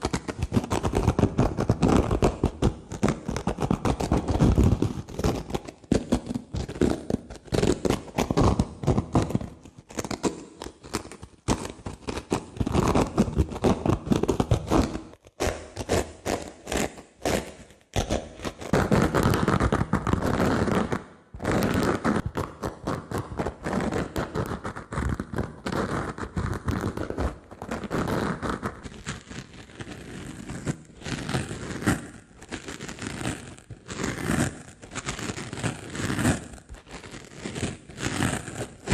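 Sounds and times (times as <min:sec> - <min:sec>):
dry sponge rubbing and squeezing: 0:29.2 - 0:38.9.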